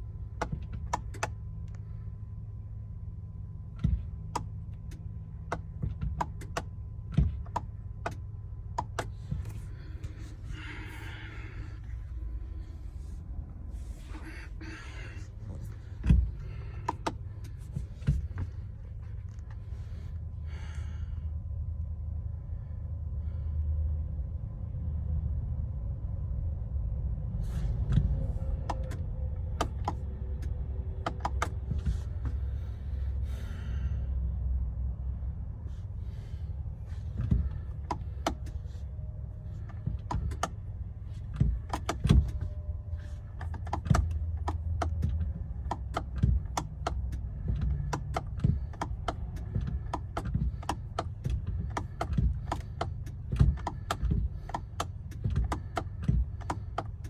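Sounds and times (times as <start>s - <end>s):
steady low rumble: 0.0s - 57.0s
sharp clicks and knocks: 0.3s - 1.8s, 3.8s - 11.9s, 14.0s - 19.6s, 27.8s - 32.4s, 37.1s - 38.8s, 39.5s - 57.0s.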